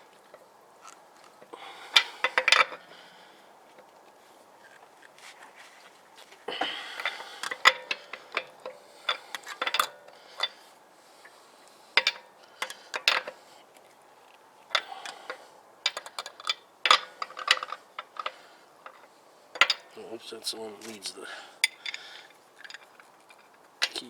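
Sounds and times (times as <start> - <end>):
lug wrench clicking on lug nuts: 1.5 - 2.9, 6.6 - 10.6, 12.0 - 13.4, 14.7 - 20.0, 21.6 - 24.0.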